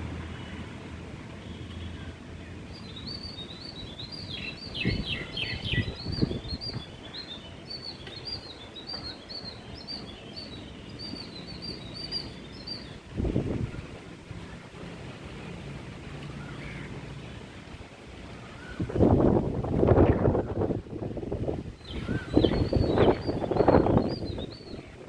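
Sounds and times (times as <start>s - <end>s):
small birds chirping: 1.4s - 14.6s, 21.4s - 25.0s.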